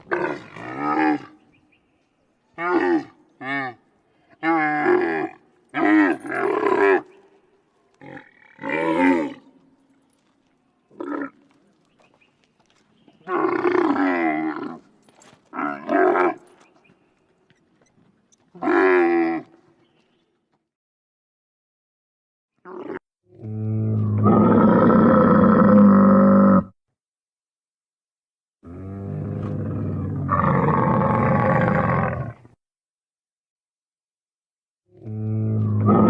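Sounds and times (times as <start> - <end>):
camel calling: 17.5 - 19.6.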